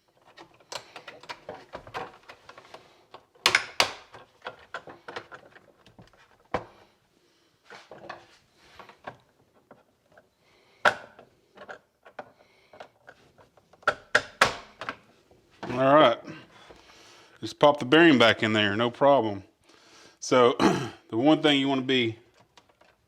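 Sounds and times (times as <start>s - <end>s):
hard plastic parts clicking and knocking: 0.0s - 6.9s, 7.7s - 15.8s, 22.2s - 23.0s.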